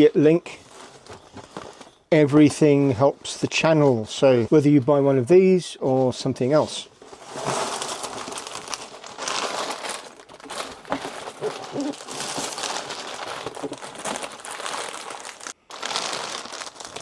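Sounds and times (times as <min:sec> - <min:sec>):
plastic bags crinkling: 0:00.0 - 0:02.1, 0:07.0 - 0:17.0.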